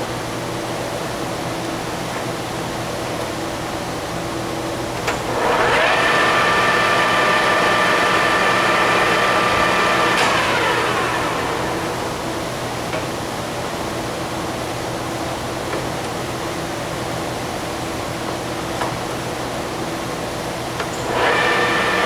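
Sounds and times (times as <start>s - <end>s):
lathe clutch click: 5.0s - 13.1s
lathe gear whine: 5.0s - 14.3s, 20.6s - 22.0s.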